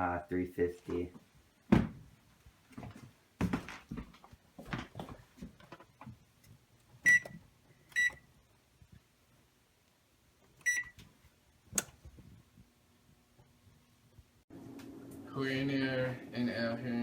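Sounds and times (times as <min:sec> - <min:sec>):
oven control panel beeping: 0:07.0 - 0:08.2, 0:10.6 - 0:11.0.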